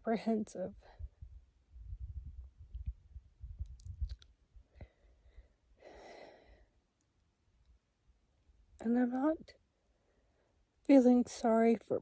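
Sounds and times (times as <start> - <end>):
low rumbling on microphone: 0.8 - 4.2.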